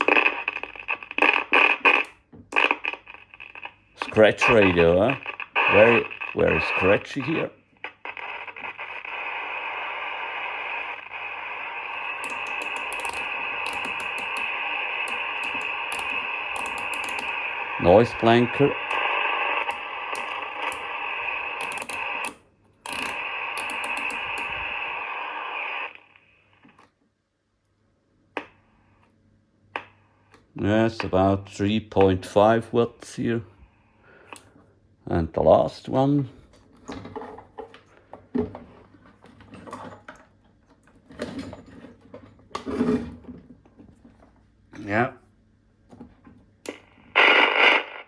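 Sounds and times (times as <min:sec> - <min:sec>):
radio static hiss: 0:00.0 - 0:26.8, 0:29.8 - 0:34.5, 0:46.7 - 0:48.0
switch clicks: 0:12.2 - 0:17.4, 0:21.6 - 0:24.6.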